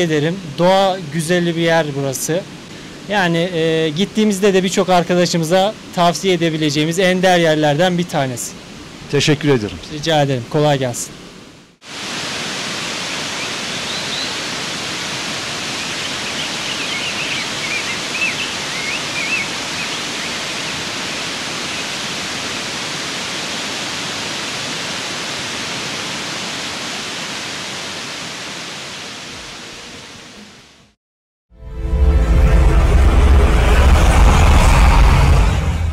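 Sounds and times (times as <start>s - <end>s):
waterfall rushing: 0.0s - 31.0s, 32.2s - 35.9s.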